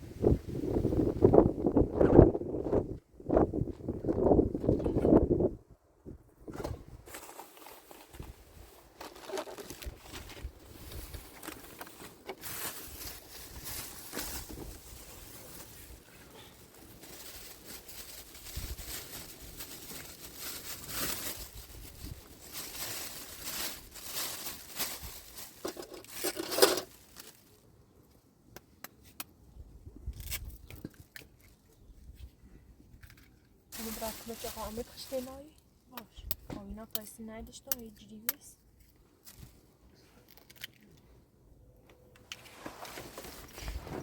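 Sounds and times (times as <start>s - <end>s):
rustling and scraping: 6.5s - 27.6s, 42.2s - 44.0s.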